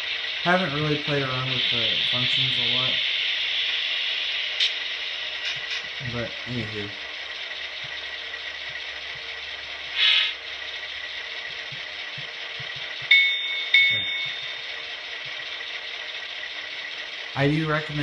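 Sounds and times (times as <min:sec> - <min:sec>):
diesel engine idling: 0:00.0 - 0:18.0
air hiss burst: 0:10.0 - 0:10.4.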